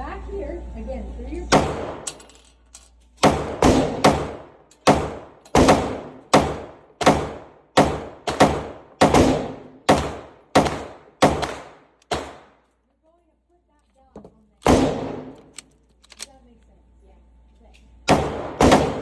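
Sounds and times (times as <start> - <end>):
pistol shots ringing: 1.5 - 2.2, 3.2 - 12.6, 14.6 - 15.6, 18.1 - 19.0.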